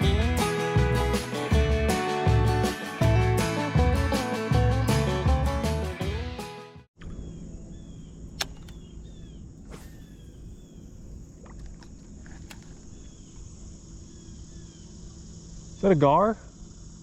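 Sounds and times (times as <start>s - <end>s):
low hum: 7.0s - 15.8s
high insect drone: 7.2s - 17.0s.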